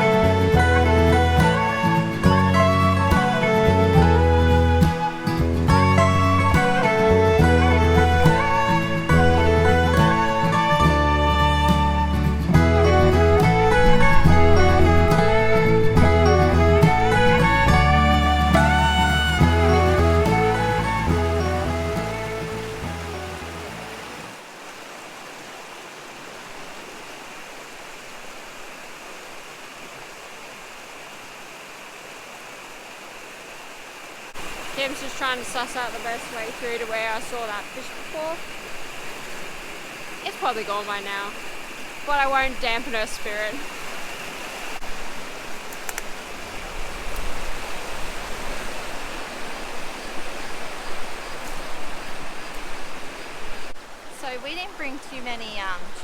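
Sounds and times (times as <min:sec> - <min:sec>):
background music: 0:00.0 - 0:24.3
river running over rocks: 0:00.0 - 0:56.0.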